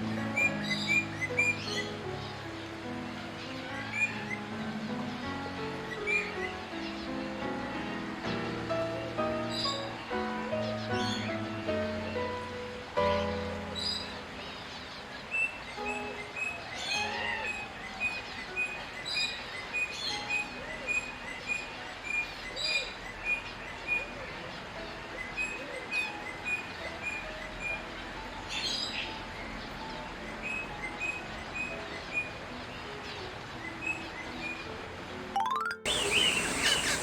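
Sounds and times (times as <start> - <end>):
bird high piping notes: 35.3 - 37.0
bird sharp chirps: 35.9 - 37.0.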